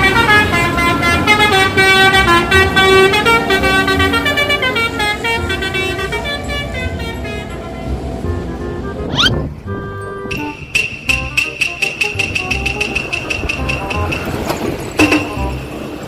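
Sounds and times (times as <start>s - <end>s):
bus horn playing a tune: 0.0s - 16.0s.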